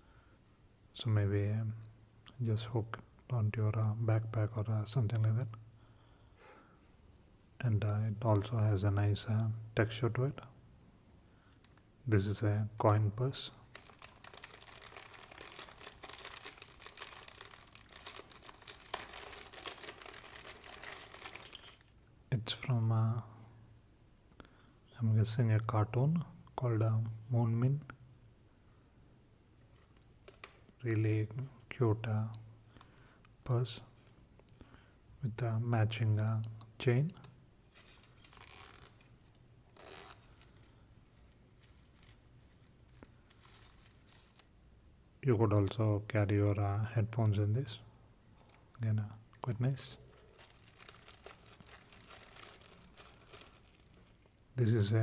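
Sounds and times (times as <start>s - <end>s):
coin purse crinkling and rustling: 13.6s - 21.9s, 37.7s - 44.5s, 50.1s - 54.5s.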